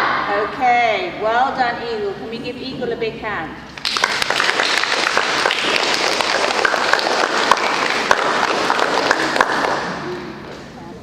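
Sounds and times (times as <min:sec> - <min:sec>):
children applauding: 0:03.8 - 0:10.2.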